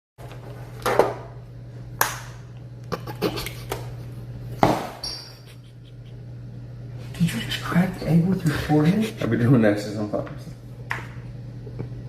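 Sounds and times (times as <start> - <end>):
steady low hum: 0.2 - 12.0.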